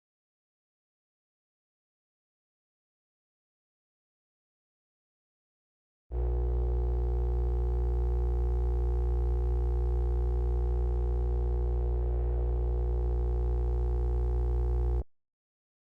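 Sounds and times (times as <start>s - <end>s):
low electronic hum: 6.1s - 15.1s.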